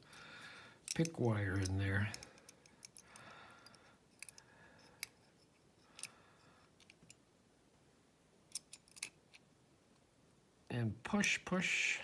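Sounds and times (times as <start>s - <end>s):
lock pick clicking and scraping: 0.8s - 7.2s, 8.5s - 9.4s.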